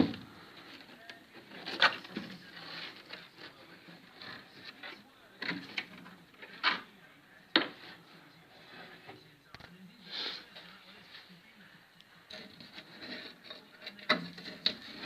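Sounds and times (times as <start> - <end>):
sharp knocks and clunks: 0.0 - 0.3.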